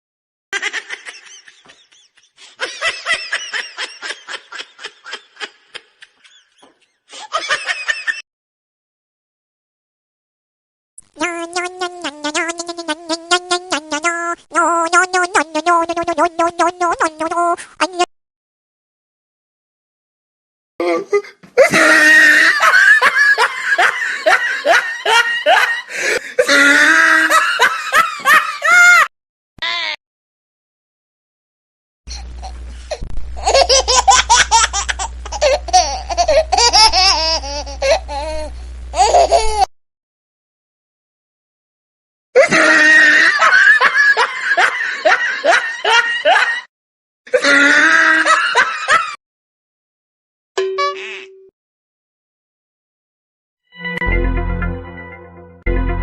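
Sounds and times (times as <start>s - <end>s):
person laughing in bursts: 0.6s - 8.2s, 21.6s - 29.1s, 32.1s - 39.7s, 42.4s - 46.7s, 47.3s - 49.2s.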